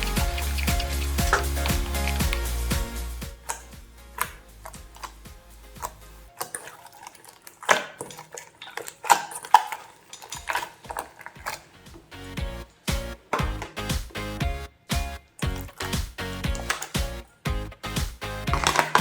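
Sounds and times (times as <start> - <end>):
background music: 0.0 - 7.8, 10.2 - 19.0
utensil clinking against bowl: 6.4 - 11.6.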